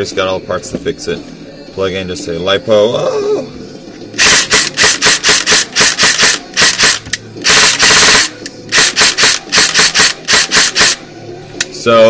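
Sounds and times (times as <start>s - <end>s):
airsoft gun firing: 4.2s - 11.0s.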